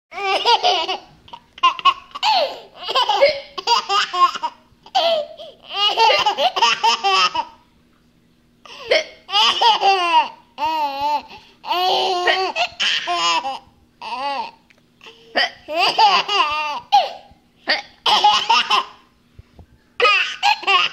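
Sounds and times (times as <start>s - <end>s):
young child laughing: 0.2s - 7.6s, 8.7s - 14.5s, 15.3s - 19.1s, 20.0s - 20.9s.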